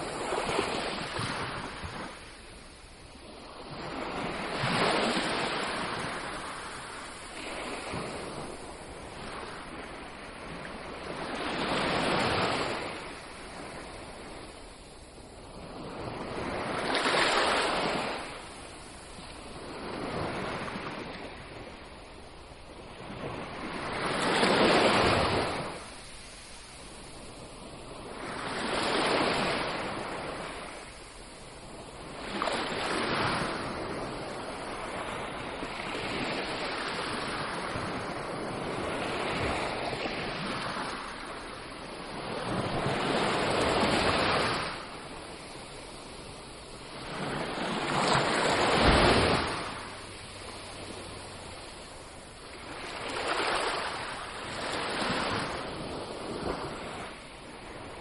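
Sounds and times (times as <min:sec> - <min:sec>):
ocean surf breaking on shore: 0:00.0 - 0:58.0
steady wash of water: 0:35.6 - 0:58.0.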